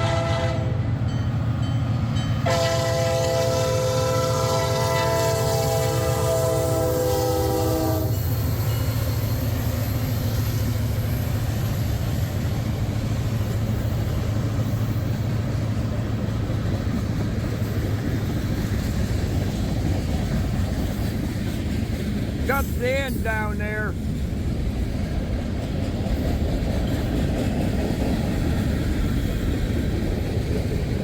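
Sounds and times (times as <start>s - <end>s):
locomotive air horn chord: 0.0s - 0.8s, 2.4s - 8.2s
train wheels rumbling on rails: 0.0s - 31.0s.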